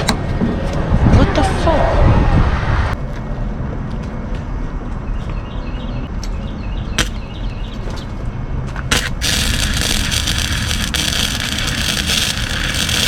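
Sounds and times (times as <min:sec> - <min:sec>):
low rumble: 0:00.2 - 0:03.7
welding arc crackling: 0:08.9 - 0:13.0.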